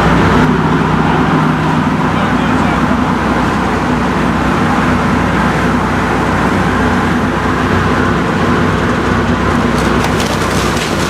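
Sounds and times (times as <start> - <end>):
industrial shredder humming: 0.0 - 11.0
sharp crackles: 9.4 - 11.0.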